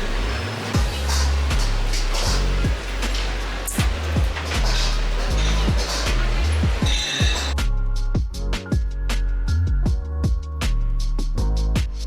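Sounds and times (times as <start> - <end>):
cymbal hits: 0.0 - 7.6
deep bass line: 0.0 - 12.0
kick drum beat: 0.8 - 10.8, 11.4 - 12.0.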